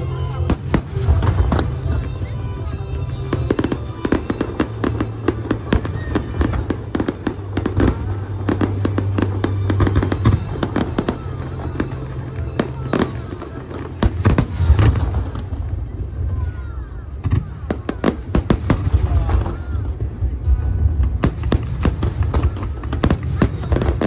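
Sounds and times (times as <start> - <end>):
music with low bass: 0.0 - 13.0
fireworks bangs and crackles: 0.0 - 24.0.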